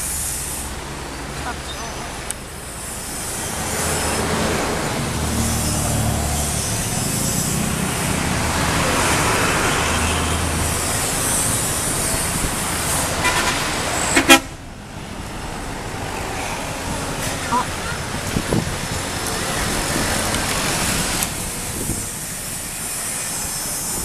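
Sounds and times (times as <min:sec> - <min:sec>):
heavy vehicle driving past: 0:00.0 - 0:24.0
short sharp horn toot: 0:13.2 - 0:14.6.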